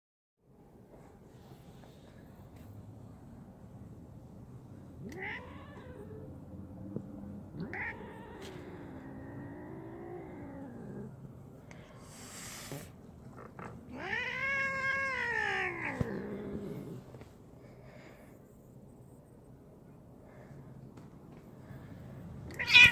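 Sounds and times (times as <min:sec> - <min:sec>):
cat yowling: 0:05.0 - 0:06.3, 0:07.6 - 0:10.9, 0:13.9 - 0:16.3, 0:22.6 - 0:22.9.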